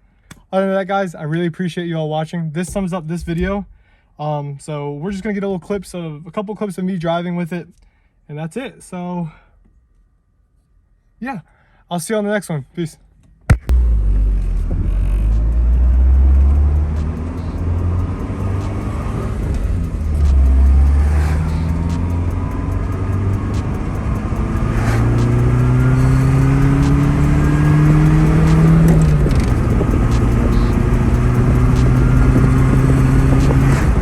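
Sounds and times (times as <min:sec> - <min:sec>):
car engine accelerating: 0:13.5 - 0:34.0.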